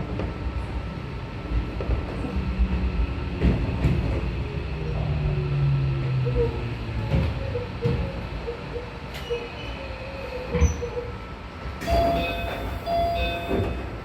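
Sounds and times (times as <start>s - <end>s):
train brake squeal: 9.1s - 11.2s, 11.8s - 13.9s
electric train motor tone: 11.8s - 13.9s.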